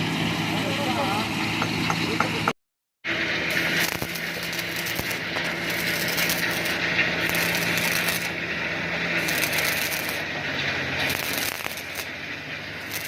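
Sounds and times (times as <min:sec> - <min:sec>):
low hum: 0:03.1 - 0:13.0
welding arc crackling: 0:03.1 - 0:13.0.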